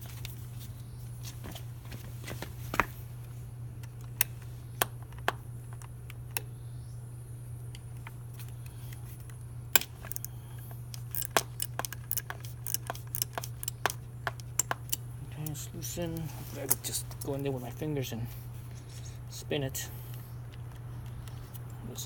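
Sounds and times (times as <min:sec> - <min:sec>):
steady low hum: 0:00.0 - 0:22.0
socket wrench clicking: 0:10.9 - 0:15.6.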